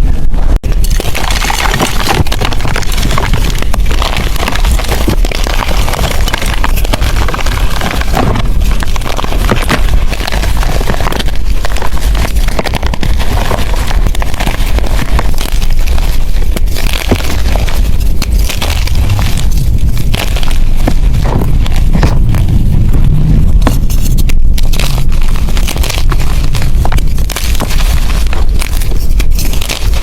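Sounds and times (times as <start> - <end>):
chalk crunching by hand: 0.8 - 30.0.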